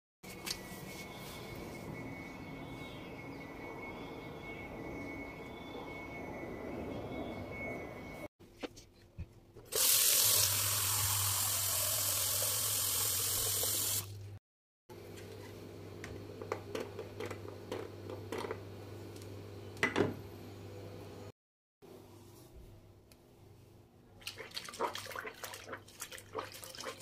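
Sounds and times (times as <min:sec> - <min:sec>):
water running from a tap: 0:09.7 - 0:14.2.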